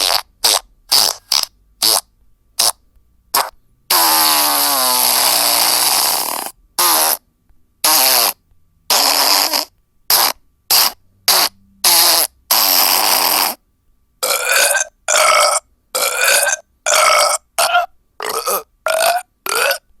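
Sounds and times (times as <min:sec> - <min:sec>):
burping: 0:14.2 - 0:19.9.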